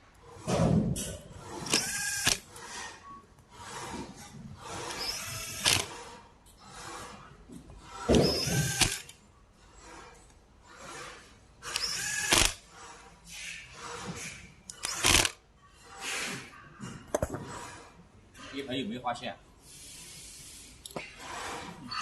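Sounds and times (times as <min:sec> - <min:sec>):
power drill whining: 0:01.6 - 0:03.0, 0:04.6 - 0:07.0, 0:07.9 - 0:09.2, 0:11.6 - 0:12.6.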